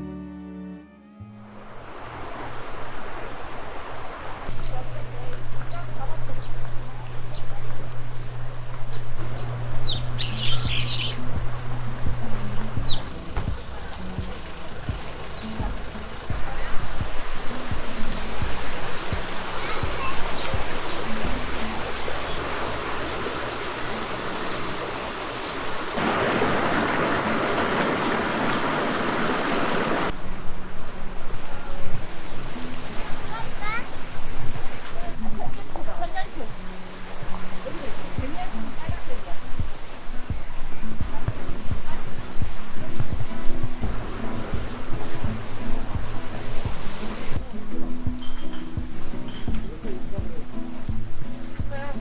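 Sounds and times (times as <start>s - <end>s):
flowing water rushing: 1.4s - 52.0s
small birds chirping: 4.5s - 30.1s.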